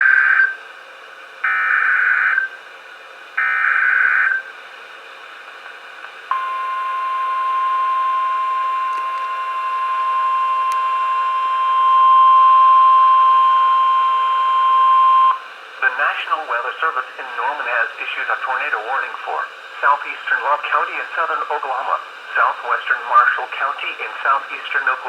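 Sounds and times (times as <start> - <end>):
steady warning alarm tone: 6.3 - 15.4
faint radio hiss: 15.3 - 25.0.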